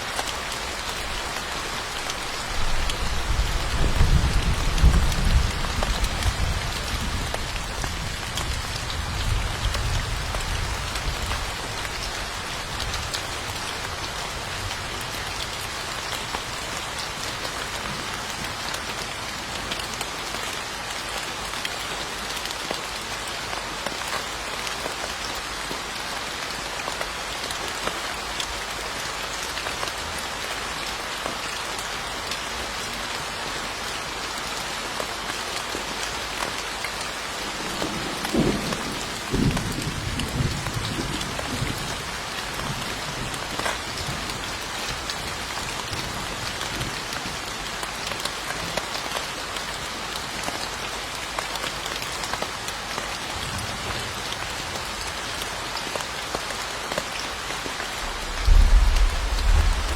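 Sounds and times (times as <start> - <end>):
steady rain falling: 0.0 - 59.9
low rumble: 58.0 - 59.9.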